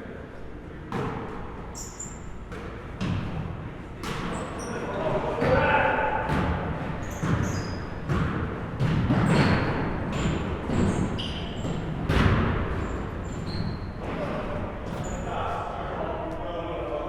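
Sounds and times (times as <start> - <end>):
sneakers squeaking: 0.9 - 15.7
basketball bouncing on gym floor: 2.4 - 4.4, 5.4 - 15.2.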